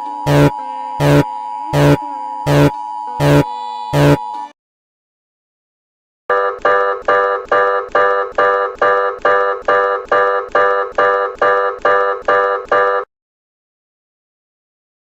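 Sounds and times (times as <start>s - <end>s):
electronic alert chord beeps: 0.2s - 4.2s, 6.3s - 13.1s.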